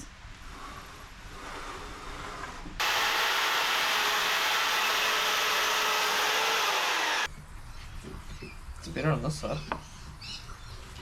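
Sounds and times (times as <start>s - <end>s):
electric sander on wood: 2.8s - 7.3s.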